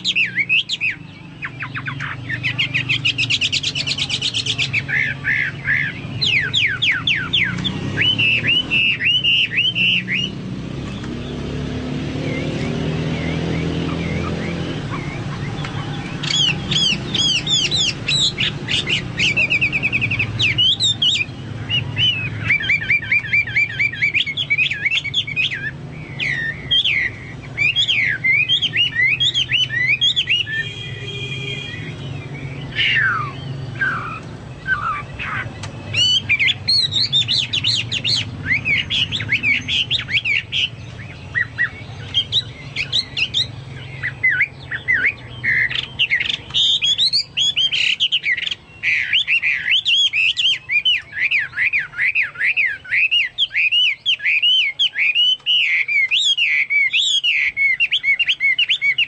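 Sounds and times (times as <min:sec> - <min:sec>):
bird singing whistles and trills: 0:00.0 - 0:59.0.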